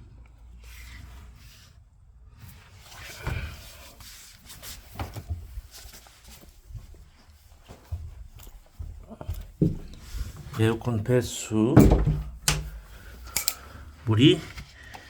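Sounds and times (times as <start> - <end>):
soft knocks and thumps: 7.7 - 10.6, 11.8 - 13.0.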